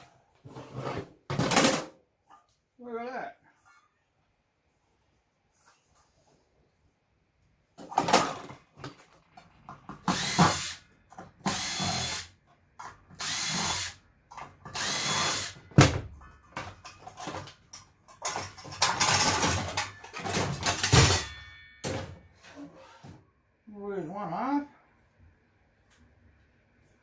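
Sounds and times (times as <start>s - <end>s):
metal parts knocking and rattling: 16.1s - 22.2s.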